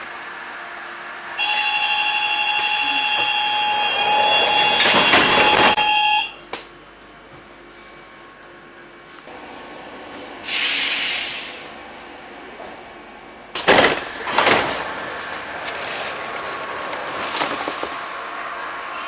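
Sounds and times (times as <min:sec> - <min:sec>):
train running: 0:00.0 - 0:19.0
sliding doors thumping shut: 0:04.0 - 0:05.8, 0:13.6 - 0:18.0
pneumatic door air hiss: 0:10.4 - 0:11.6.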